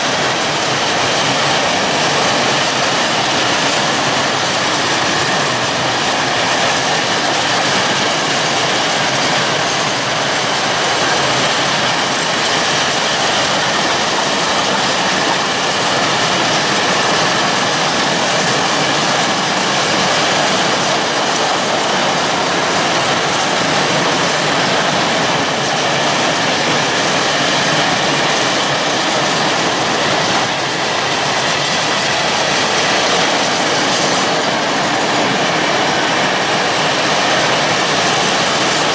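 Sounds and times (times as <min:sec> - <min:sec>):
freight train wagons on rails: 0:00.0 - 0:38.9.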